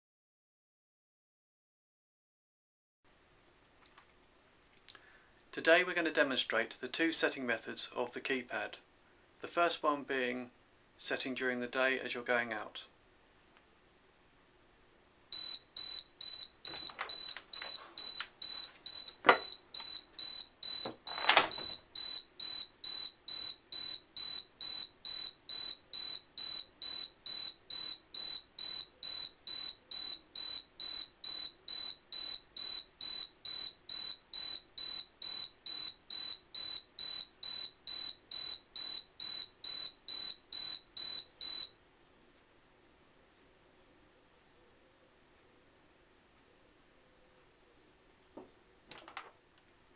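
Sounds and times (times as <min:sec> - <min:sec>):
high steady alarm beeping: 0:15.4 - 0:41.8
knocks and clicks: 0:16.7 - 0:18.3.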